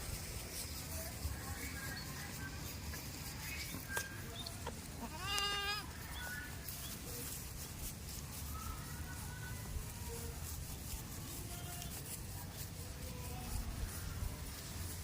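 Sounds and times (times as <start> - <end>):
goat bleating: 4.9 - 6.0.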